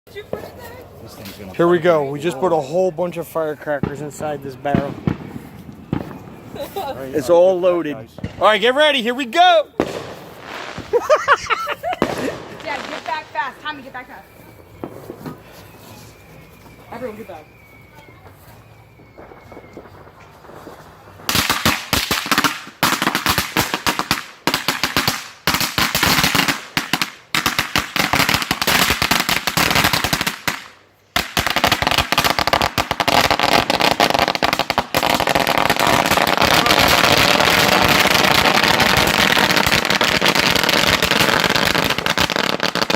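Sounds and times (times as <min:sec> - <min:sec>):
firecrackers banging in a barrel: 0:16.9 - 0:42.9.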